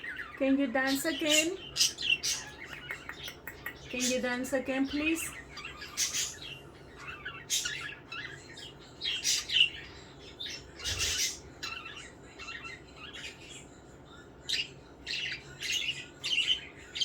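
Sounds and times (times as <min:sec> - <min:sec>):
budgerigars chirping and chattering: 0:00.0 - 0:17.0.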